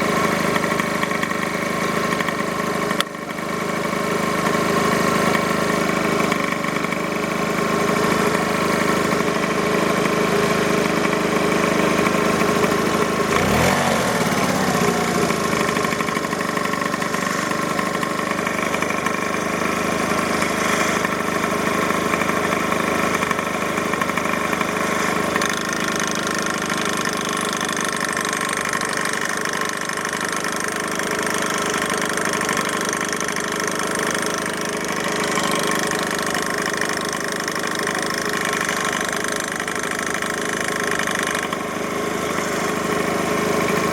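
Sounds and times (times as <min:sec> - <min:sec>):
engine knock: 0:00.0 - 0:43.9
scooter engine idling: 0:00.0 - 0:43.9.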